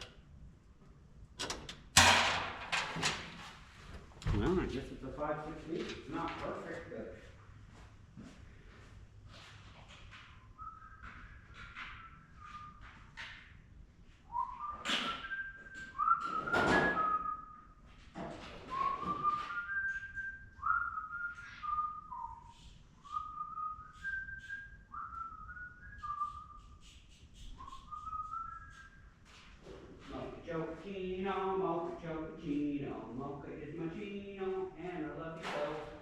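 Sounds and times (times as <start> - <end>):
man whistling a tune: 10.5 - 12.9, 14.3 - 17.8, 18.7 - 29.1.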